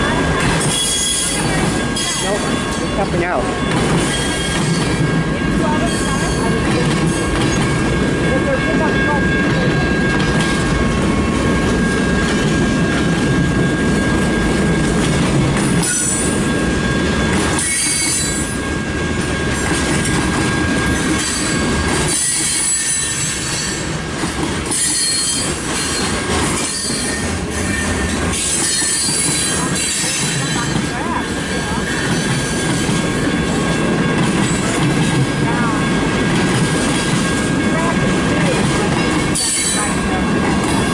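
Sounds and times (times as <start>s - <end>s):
freight train rumbling: 0.0s - 40.9s
high-pitched wheel squeal: 0.6s - 5.1s, 15.8s - 19.6s, 20.7s - 23.9s, 24.7s - 32.9s, 39.3s - 40.0s.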